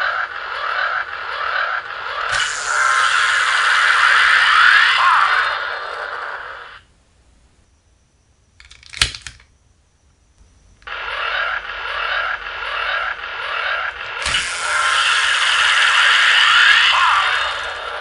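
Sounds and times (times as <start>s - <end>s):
toy electronic sound effects: 0.0s - 5.8s, 10.8s - 18.0s
sharp mechanical toy click: 8.6s - 9.5s.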